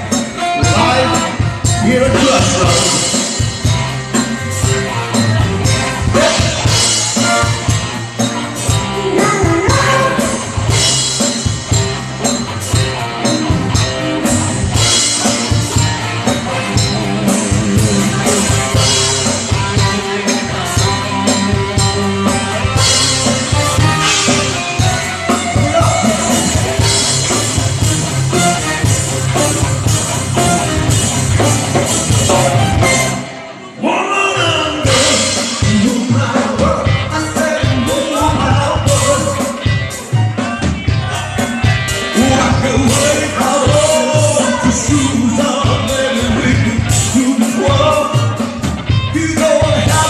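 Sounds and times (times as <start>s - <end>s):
live rock band playing: 0.0s - 50.0s.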